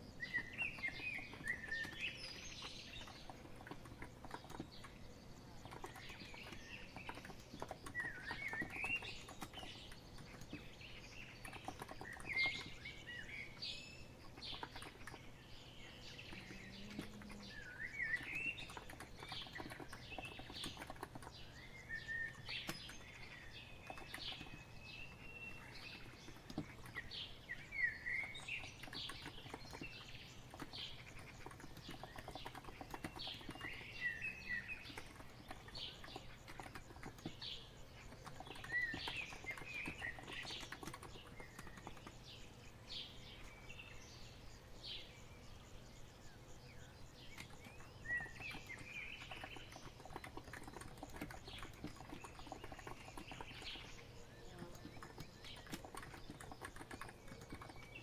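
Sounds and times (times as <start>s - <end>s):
small birds chirping: 0.0s - 58.0s
keyboard typing clicks: 0.8s - 5.0s, 16.2s - 21.4s, 22.3s - 24.7s, 28.2s - 42.2s, 47.2s - 58.0s.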